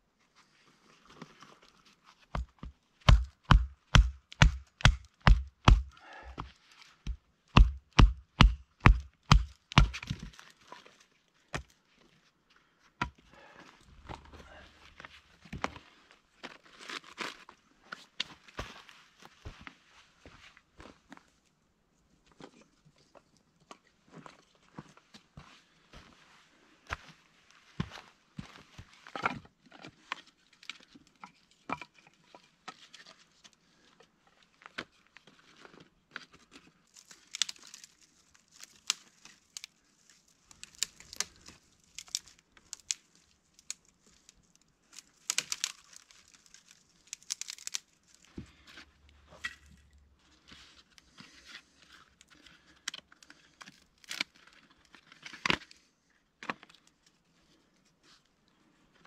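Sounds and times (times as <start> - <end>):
rustling and crinkling: 0.2 - 2.8, 9.9 - 12.6, 13.8 - 21.4, 22.2 - 59.0.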